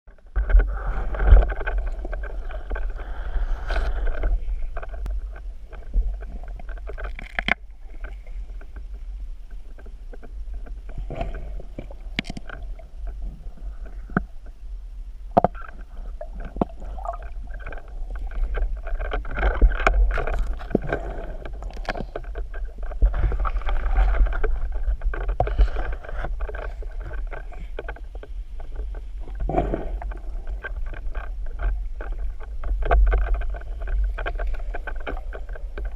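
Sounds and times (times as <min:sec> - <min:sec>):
muffled underwater rushing water: 0:00.1 - 0:35.9
sharp clicks and knocks: 0:03.7 - 0:14.6, 0:15.3 - 0:35.9.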